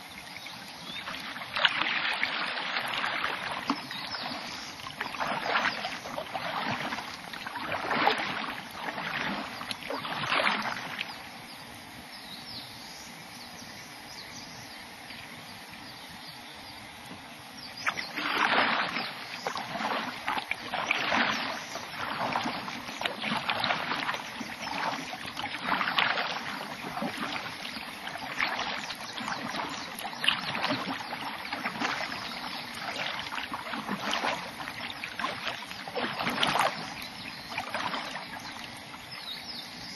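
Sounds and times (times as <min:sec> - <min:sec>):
paddle strokes splashing in water: 0:00.0 - 0:11.4, 0:17.1 - 0:39.9.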